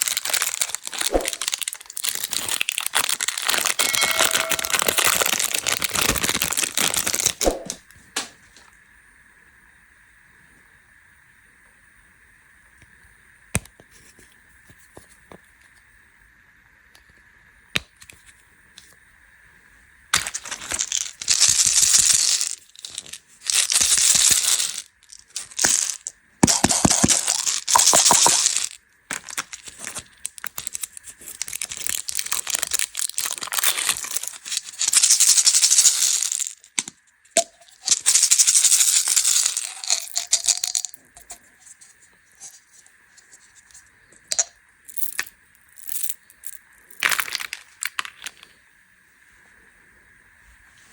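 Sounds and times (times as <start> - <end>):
plastic packaging crinkling: 0.0 - 7.8, 20.2 - 36.9, 37.6 - 41.8, 44.9 - 48.4
plastic packaging clicks: 0.0 - 8.3, 25.4 - 35.1.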